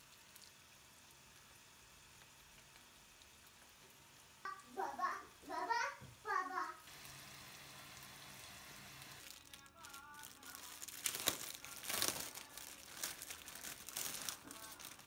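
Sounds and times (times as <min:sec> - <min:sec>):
crinkling and rustling: 0:09.1 - 0:15.0.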